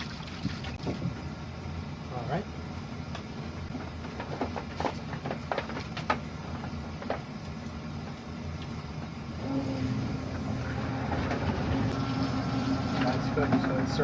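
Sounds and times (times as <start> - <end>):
electric pump humming: 7.7 - 14.0.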